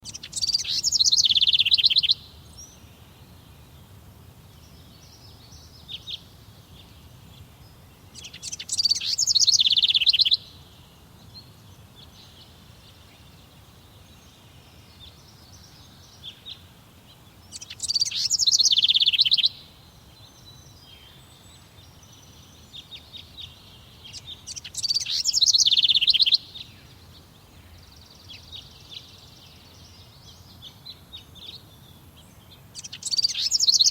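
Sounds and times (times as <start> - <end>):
faint bird chirps: 0.0 - 33.9
songbird singing with trill: 0.0 - 33.9.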